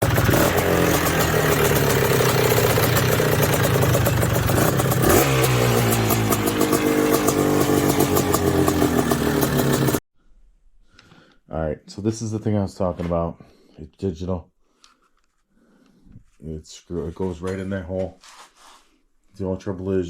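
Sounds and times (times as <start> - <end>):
engine running and revving: 0.0 - 10.0.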